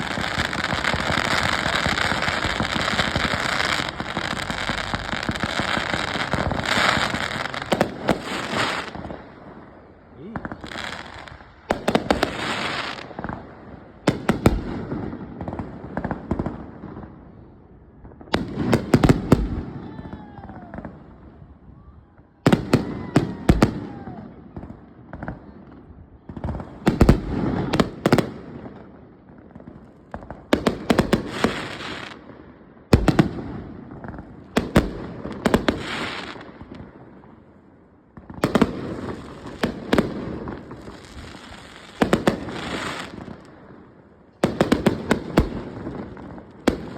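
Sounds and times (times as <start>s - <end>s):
firework crackling: 0.0s - 17.4s, 26.3s - 32.3s, 32.9s - 46.9s.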